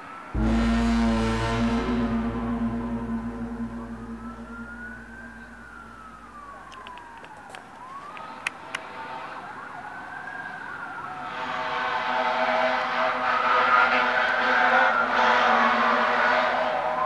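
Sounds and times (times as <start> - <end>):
eerie siren-like wailing tone: 0.0 - 17.0
steady droning hum: 0.3 - 7.2
rushing noise: 0.4 - 6.9.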